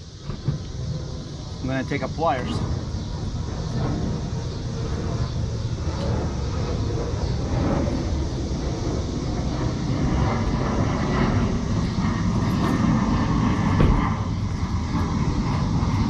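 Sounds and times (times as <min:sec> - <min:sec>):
low rumbling background noise: 0:00.0 - 0:16.0.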